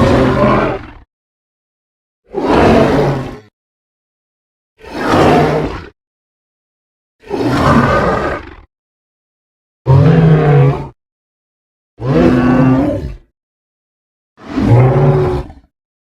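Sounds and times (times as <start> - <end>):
deep growling creature calls: 0.0 - 1.1, 2.3 - 3.5, 4.8 - 6.0, 7.2 - 8.7, 9.9 - 11.0, 12.0 - 13.3, 14.4 - 15.7.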